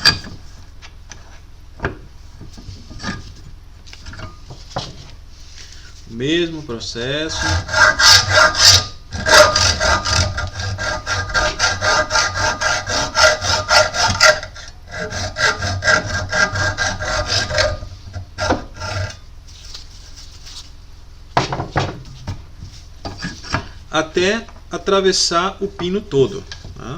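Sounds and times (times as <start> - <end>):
hacksaw sawing metal: 7.1 - 19.2.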